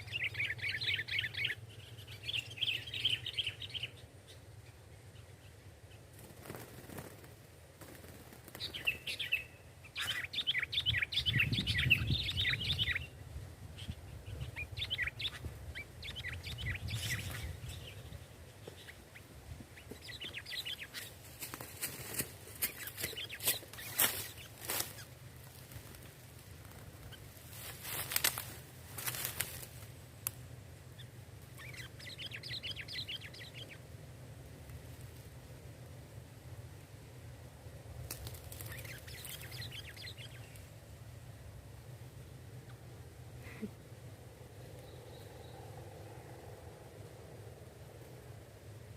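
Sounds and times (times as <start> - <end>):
birds chattering: 0.0 - 34.0, 38.1 - 40.8
rustling: 20.7 - 30.4.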